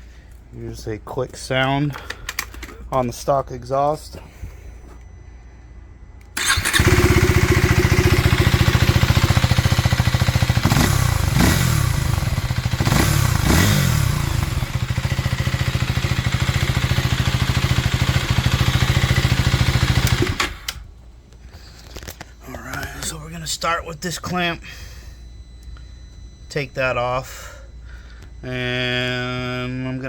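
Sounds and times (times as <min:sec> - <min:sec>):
motorcycle engine idling and revving: 0:06.4 - 0:20.7.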